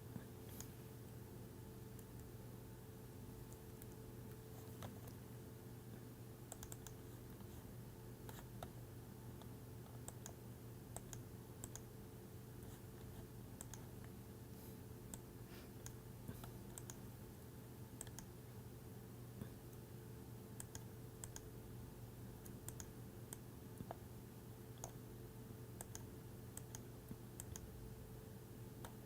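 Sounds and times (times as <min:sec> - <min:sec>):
low electrical hum: 0:00.0 - 0:29.0.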